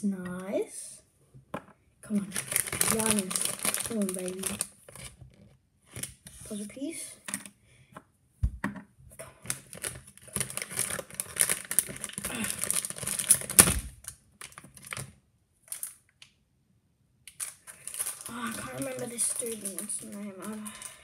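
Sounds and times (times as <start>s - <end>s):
plastic packaging crinkling: 2.1s - 5.2s, 9.4s - 16.0s, 17.3s - 21.0s.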